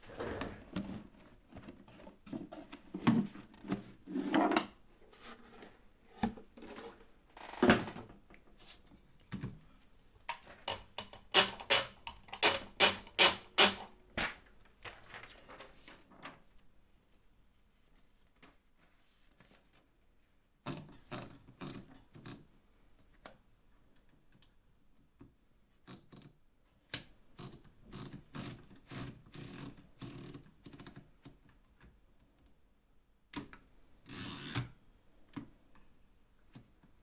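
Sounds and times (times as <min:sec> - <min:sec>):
typewriter carriage rasping: 0:11.3 - 0:14.0.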